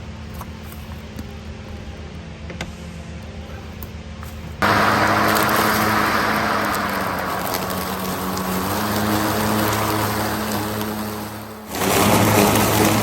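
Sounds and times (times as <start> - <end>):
lawn mower running: 4.6 - 13.0.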